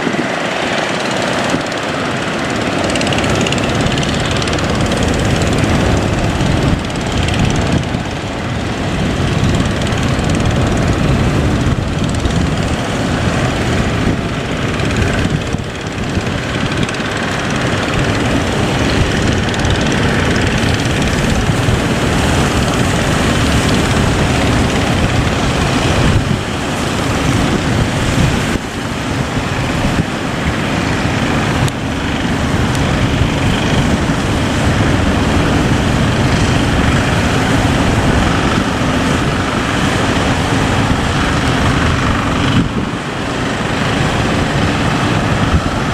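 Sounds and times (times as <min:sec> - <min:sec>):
boat engine running: 0:00.0 - 0:45.9
water rushing against hull: 0:00.0 - 0:45.9.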